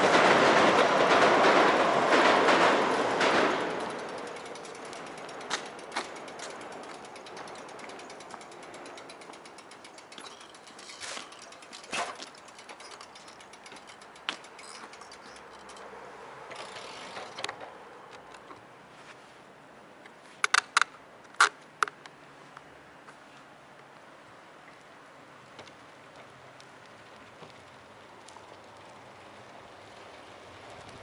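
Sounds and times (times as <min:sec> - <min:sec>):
bicycle freewheel ticking: 0:03.2 - 0:17.4.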